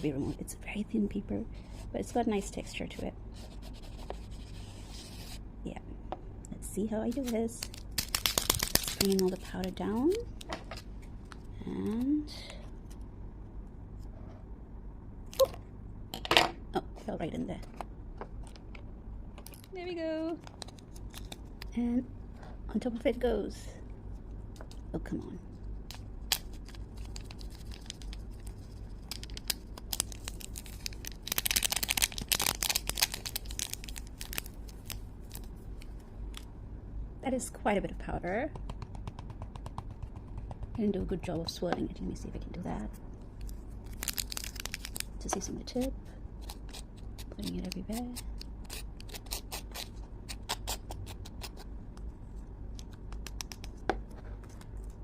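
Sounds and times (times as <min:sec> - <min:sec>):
powder packet crinkling: 0:07.1 - 0:10.5, 0:20.4 - 0:21.7, 0:25.9 - 0:35.9, 0:43.4 - 0:45.2.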